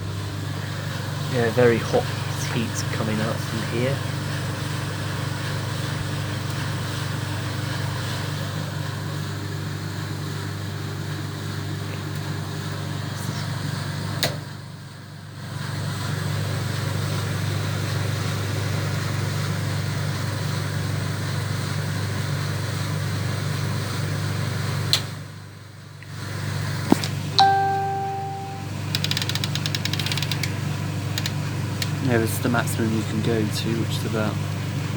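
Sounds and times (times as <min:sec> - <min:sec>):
short steady tone: 0:27.4 - 0:28.8.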